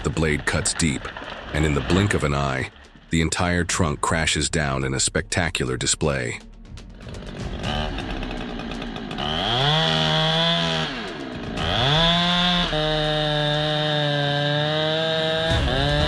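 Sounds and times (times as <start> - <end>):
chainsaw revving and cutting: 7.0 - 16.0.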